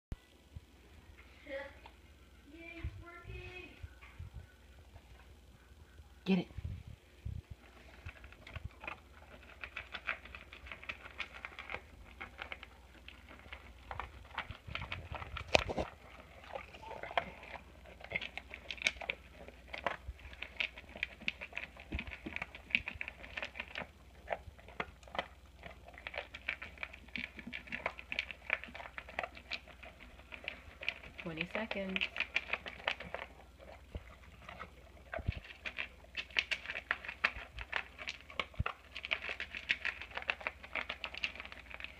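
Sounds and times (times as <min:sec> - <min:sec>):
dog eating from a bowl: 0:07.4 - 0:41.9.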